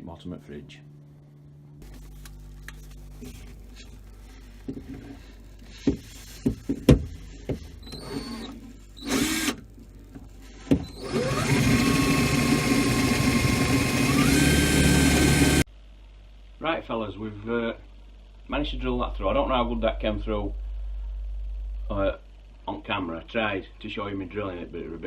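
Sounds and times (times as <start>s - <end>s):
power drill boring: 7.8s - 9.6s, 10.6s - 15.7s.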